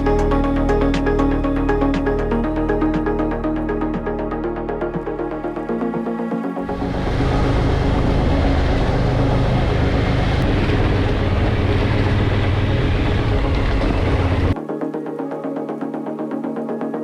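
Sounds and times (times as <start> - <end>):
motorcycle engine running: 6.6 - 14.6
wind and road noise: 6.7 - 14.6.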